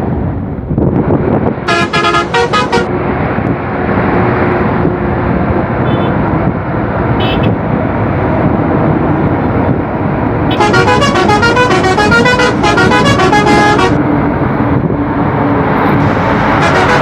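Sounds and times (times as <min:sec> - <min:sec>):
engine and road rumble: 0:00.0 - 0:17.0
bus musical horn tune: 0:01.7 - 0:03.0, 0:05.8 - 0:06.2, 0:07.2 - 0:07.6, 0:10.5 - 0:14.1, 0:16.1 - 0:17.0.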